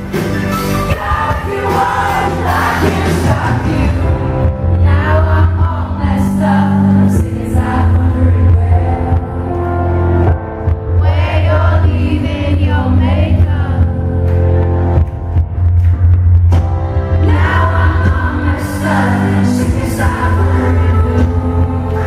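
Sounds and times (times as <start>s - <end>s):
live band playing: 0.0s - 22.0s
person singing: 17.2s - 22.0s.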